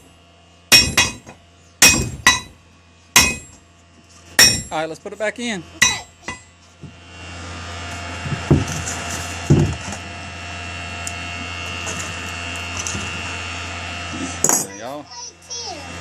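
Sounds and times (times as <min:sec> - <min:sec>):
forge air blower whirring: 0:04.4 - 0:16.0.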